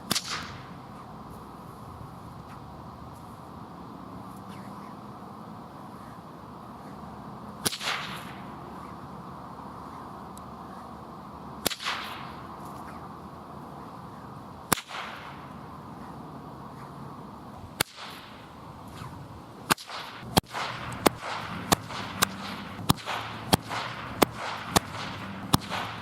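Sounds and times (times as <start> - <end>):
whip cracking: 0.0 - 1.1, 4.3 - 5.0, 7.6 - 9.1, 11.6 - 13.1, 13.8 - 17.0, 17.7 - 26.0.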